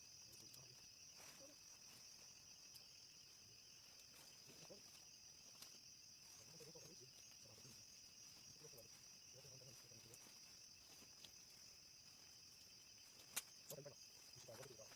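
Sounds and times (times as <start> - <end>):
night insects chorus: 0.0 - 14.9
faint clicks: 12.6 - 13.9.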